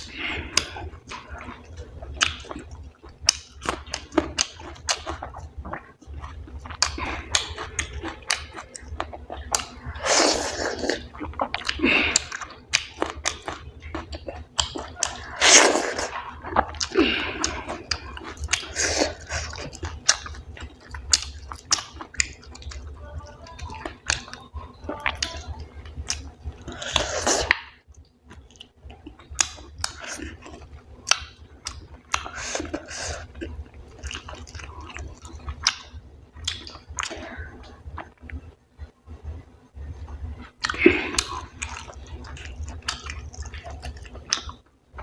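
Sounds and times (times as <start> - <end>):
person chewing with wet mouth sounds: 0.0 - 38.6, 39.8 - 45.0.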